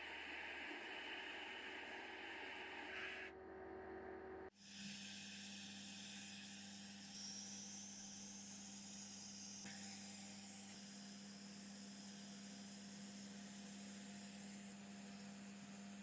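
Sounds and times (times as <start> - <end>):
low even hum: 0.0 - 4.5.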